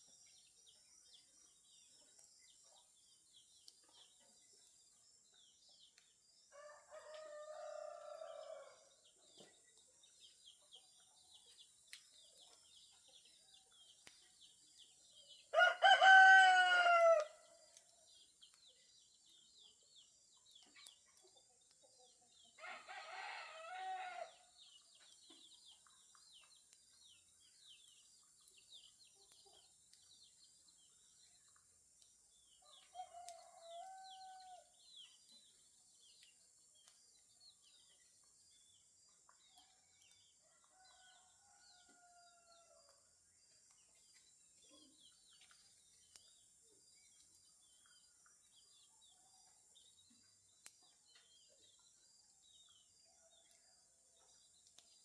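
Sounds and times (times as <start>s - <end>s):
small birds chirping: 0.0s - 55.0s
rooster crowing: 15.5s - 17.4s, 22.6s - 24.3s.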